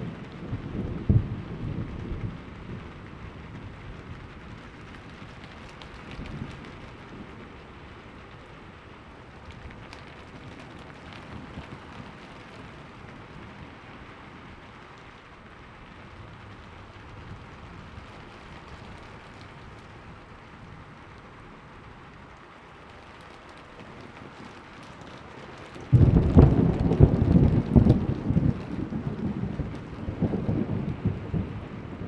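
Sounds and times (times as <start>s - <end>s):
distant thunder rumble: 0.0s - 7.6s, 23.6s - 32.0s
steady rain: 0.0s - 32.0s.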